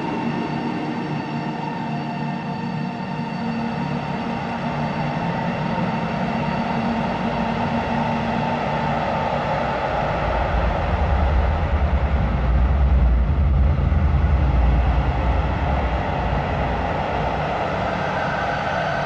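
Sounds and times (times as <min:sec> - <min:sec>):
deep low rumble: 0:09.9 - 0:17.9.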